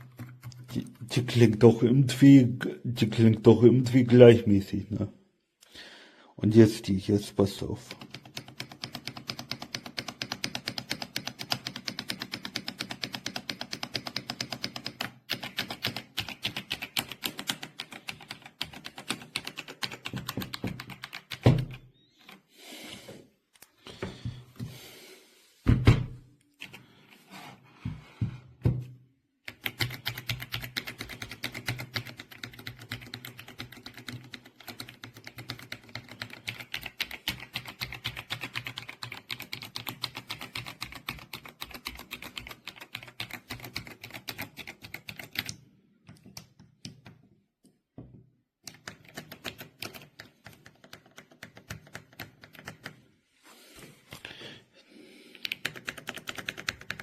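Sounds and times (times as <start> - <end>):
fast typing on mechanical keyboard: 7.8 - 22.4, 29.5 - 45.5, 48.7 - 53.0, 55.4 - 57.0.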